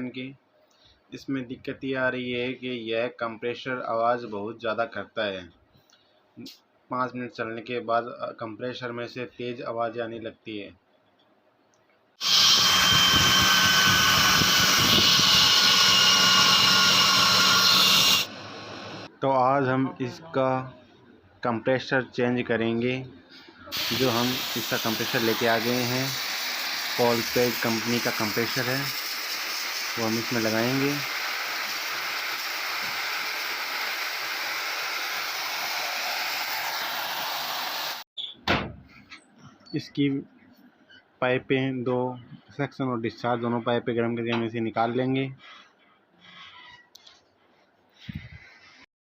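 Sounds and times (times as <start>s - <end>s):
steady hiss: 23.7s - 33.0s.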